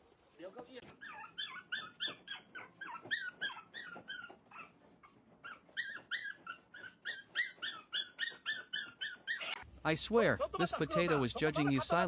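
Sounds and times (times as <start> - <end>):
dog yelping: 0.8 - 9.6.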